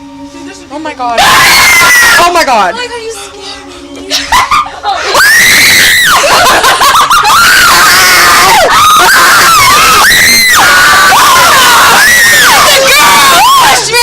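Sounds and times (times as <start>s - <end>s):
people screaming: 1.2s - 2.3s, 4.3s - 14.0s.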